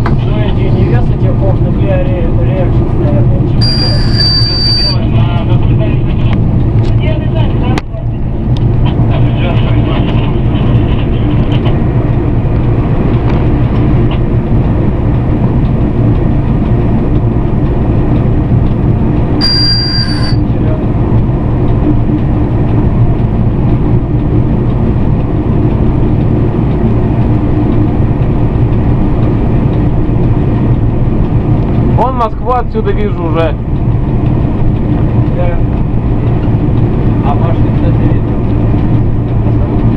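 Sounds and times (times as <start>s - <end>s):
locomotive cab rumble and hum: 0.0s - 39.9s
short high-pitched beep: 3.6s - 5.0s, 19.4s - 20.4s.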